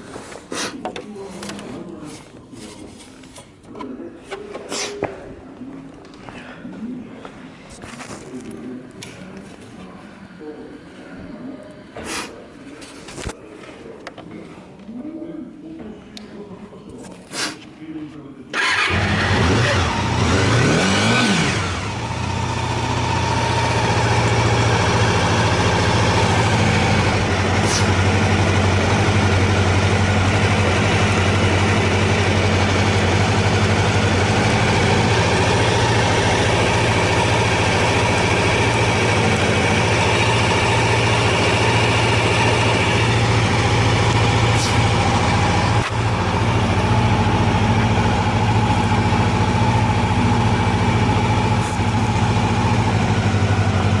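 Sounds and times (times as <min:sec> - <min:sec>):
motorcycle engine revving and idling: 0:18.6 - 0:54.0.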